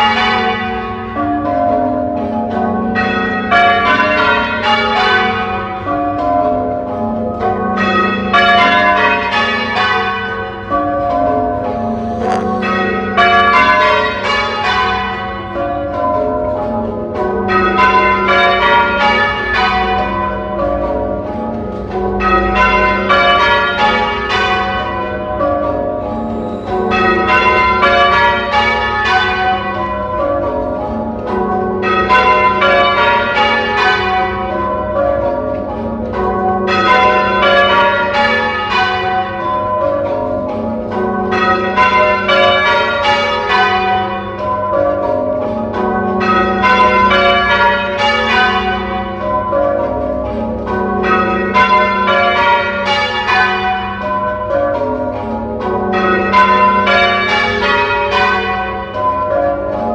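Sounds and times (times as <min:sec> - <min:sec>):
church bells ringing: 0:00.0 - 0:59.9.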